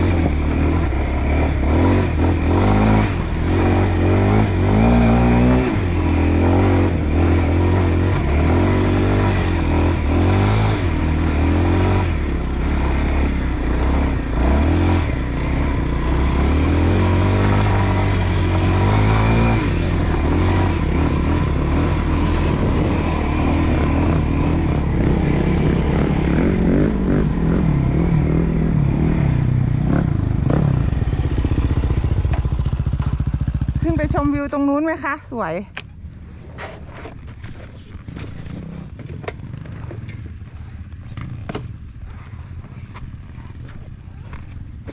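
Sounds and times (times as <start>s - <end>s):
dirt bike engine revving: 0.0s - 35.2s.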